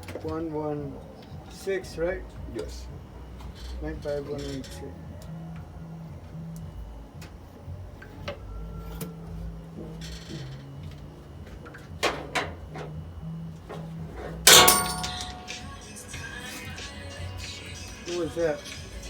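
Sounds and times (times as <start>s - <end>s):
metal tools clinking on engine parts: 3.4s - 4.9s, 13.6s - 16.8s
loud ringing metallic clang: 14.4s - 16.0s.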